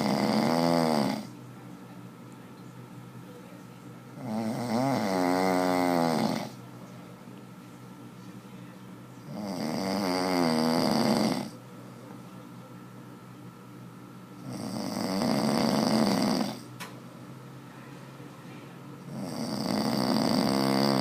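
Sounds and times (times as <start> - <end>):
man snoring: 0.0 - 1.3, 4.2 - 6.6, 9.2 - 11.6, 14.4 - 16.7, 19.0 - 21.0.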